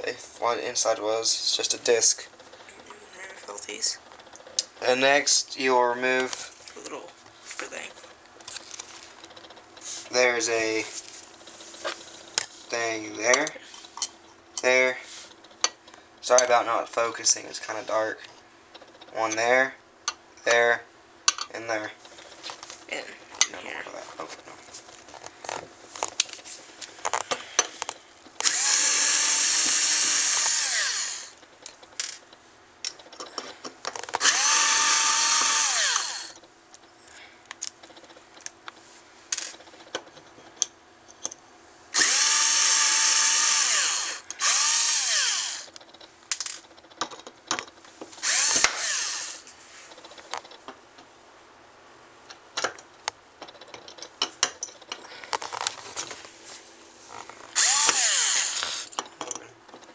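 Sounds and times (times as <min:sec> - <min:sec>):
power drill spinning: 0:28.4 - 0:31.4, 0:34.0 - 0:36.4, 0:42.0 - 0:45.8, 0:48.2 - 0:49.5, 0:57.5 - 0:59.0
clicks and handling noise: 0:45.7 - 0:48.8, 0:49.5 - 0:51.1, 0:52.3 - 0:58.0.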